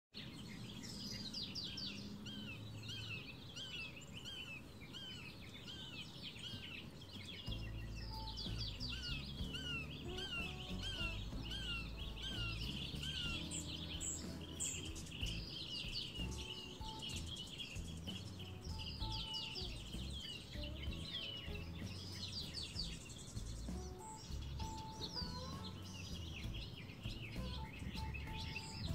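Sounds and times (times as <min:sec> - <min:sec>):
small birds chirping: 0:00.1 - 0:28.9
down-slurred whistled bird notes: 0:00.3 - 0:28.9
soft background music: 0:01.6 - 0:28.9.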